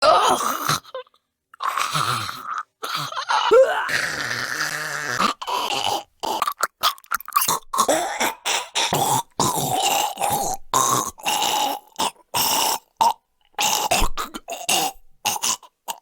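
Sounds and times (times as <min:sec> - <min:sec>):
person choking and gagging: 0:00.0 - 0:16.0
person coughing and retching: 0:05.1 - 0:16.0.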